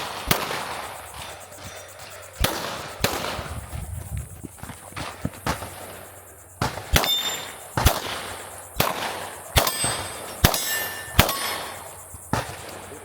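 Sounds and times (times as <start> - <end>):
pistol shots: 0.0 - 1.0, 2.4 - 3.5, 6.6 - 12.9
steel targets ringing: 7.0 - 7.6, 8.9 - 11.8.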